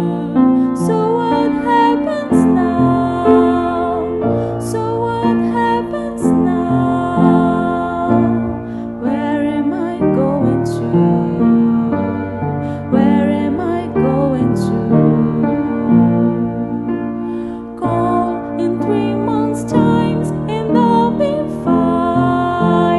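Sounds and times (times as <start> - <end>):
piano accompaniment: 0.0 - 22.9
woman singing a ballad: 0.0 - 22.9.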